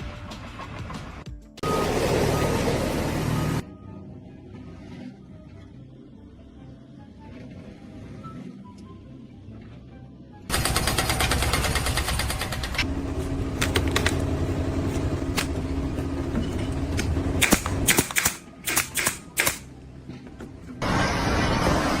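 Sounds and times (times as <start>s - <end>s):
rapid mechanical rattle: 10.5s - 12.9s.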